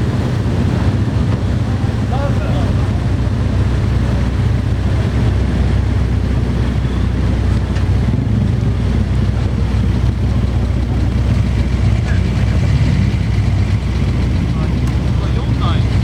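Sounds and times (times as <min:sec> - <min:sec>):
car engine rumbling: 0:00.0 - 0:16.0.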